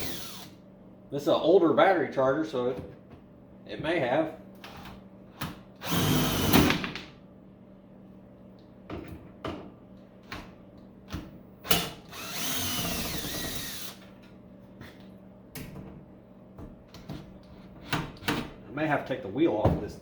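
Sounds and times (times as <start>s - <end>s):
power drill whining: 0.0s - 0.6s, 5.8s - 6.7s, 11.7s - 14.0s.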